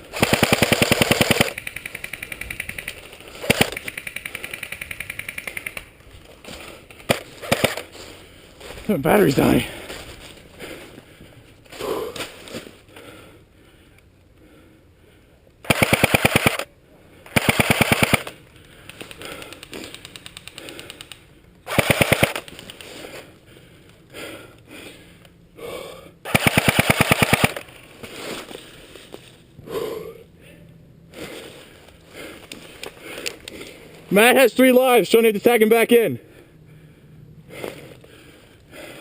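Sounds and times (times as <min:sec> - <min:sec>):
airsoft gun firing full auto: 0:00.1 - 0:05.8, 0:07.1 - 0:07.9, 0:15.6 - 0:16.7, 0:17.3 - 0:18.4, 0:21.7 - 0:22.6, 0:26.3 - 0:27.7.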